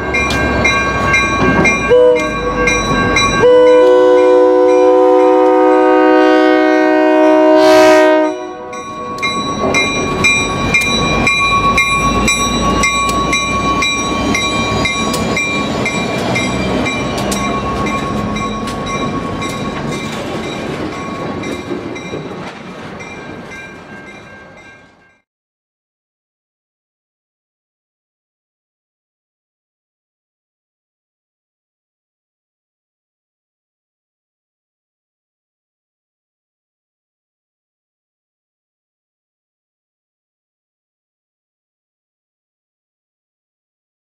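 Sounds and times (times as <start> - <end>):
train horn chord: 1.8 - 2.7, 3.4 - 8.9
train wheel clicks: 9.1 - 24.2.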